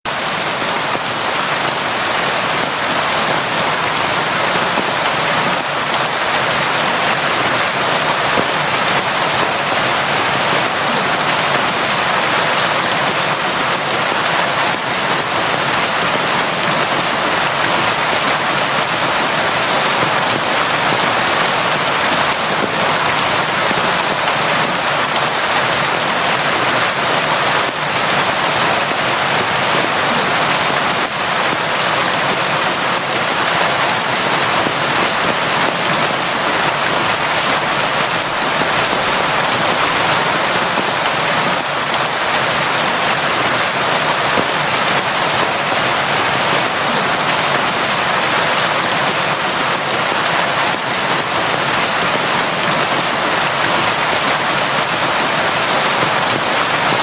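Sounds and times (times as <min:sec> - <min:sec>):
rain patter: 0:00.1 - 0:57.0.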